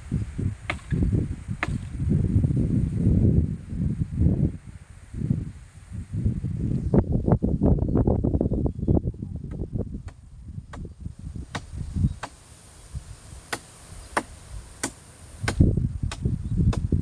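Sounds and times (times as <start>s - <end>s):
blade chopping wood: 0.7s - 1.0s, 1.6s - 1.9s, 13.5s - 16.9s.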